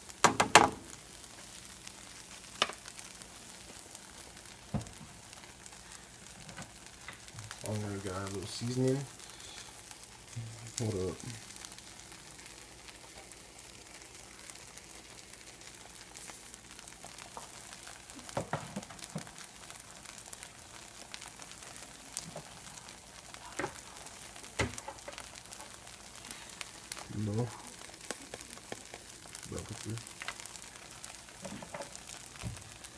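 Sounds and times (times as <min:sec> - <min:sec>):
food sizzling in a pan: 0:00.0 - 0:32.9
knocks: 0:00.2 - 0:00.8.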